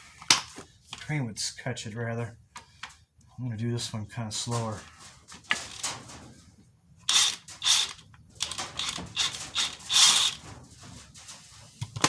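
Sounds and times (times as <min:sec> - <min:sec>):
wrench rattling on socket: 0:07.1 - 0:10.4.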